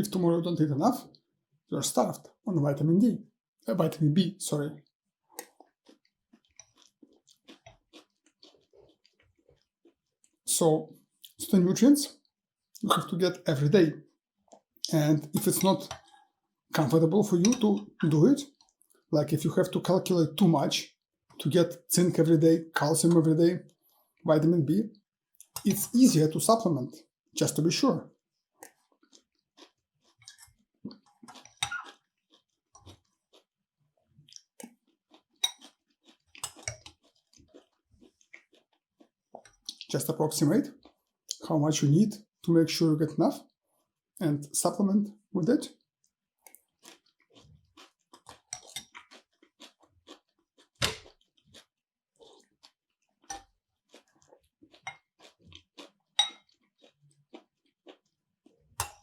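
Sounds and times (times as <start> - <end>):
person chewing and smacking: 5.3 - 10.4, 14.0 - 19.1, 25.3 - 26.2, 28.3 - 41.5, 45.7 - 59.0.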